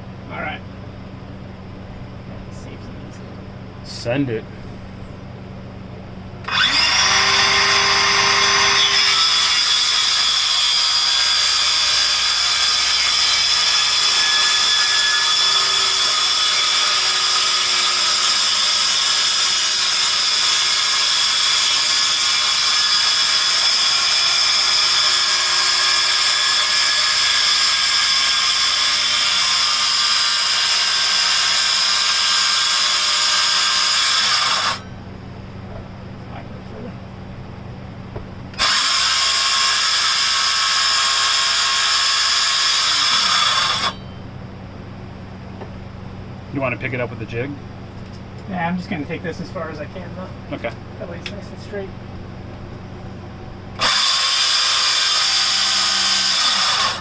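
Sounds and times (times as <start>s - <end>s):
power saw cutting wood: 6.5s - 34.8s, 38.6s - 44.0s, 53.8s - 57.0s.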